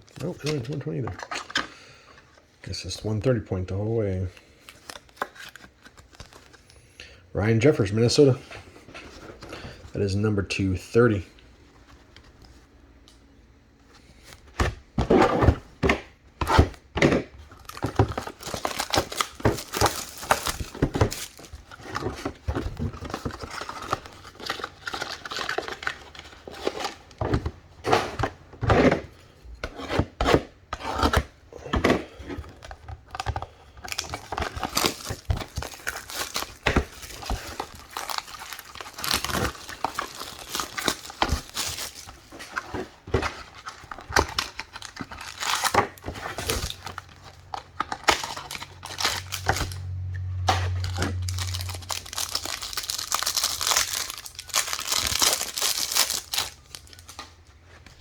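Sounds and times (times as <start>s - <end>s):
foil wrappers tearing and crinkling: 17.5s - 27.0s, 33.0s - 42.8s, 43.4s - 49.8s, 50.7s - 57.2s.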